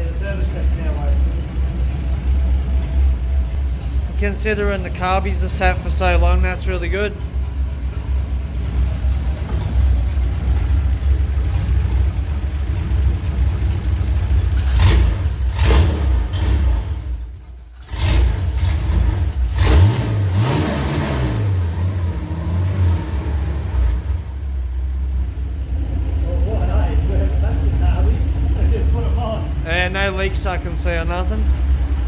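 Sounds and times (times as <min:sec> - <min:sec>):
car engine revving: 0:00.0 - 0:32.0.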